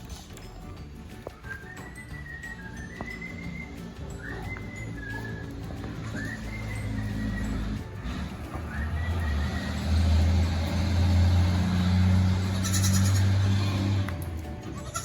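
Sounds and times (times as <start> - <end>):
goat bleating: 11.1 - 15.0.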